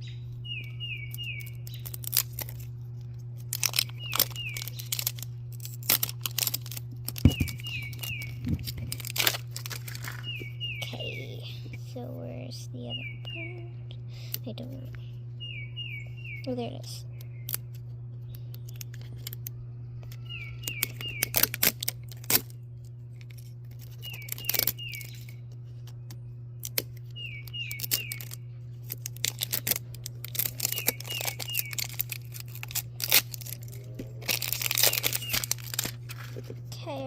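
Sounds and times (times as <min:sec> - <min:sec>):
steady low hum: 0:00.0 - 0:37.0
packaging clicks and rustles: 0:01.2 - 0:10.4, 0:20.6 - 0:26.0, 0:27.7 - 0:36.6
wrapper tearing: 0:01.4 - 0:10.3, 0:20.6 - 0:25.4, 0:27.7 - 0:36.6.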